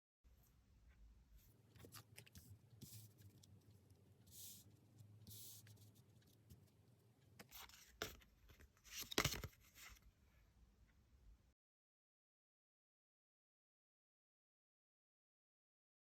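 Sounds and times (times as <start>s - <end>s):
cards rustling and sliding: 7.4s - 10.0s.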